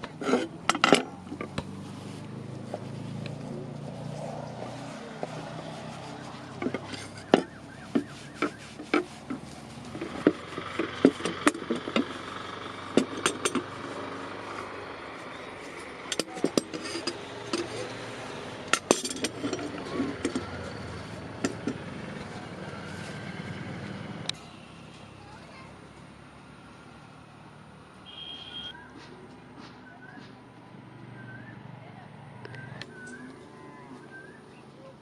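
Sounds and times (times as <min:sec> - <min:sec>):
metal clinks and taps: 0:06.6 - 0:12.2, 0:12.9 - 0:14.0, 0:15.7 - 0:18.0, 0:18.6 - 0:22.2.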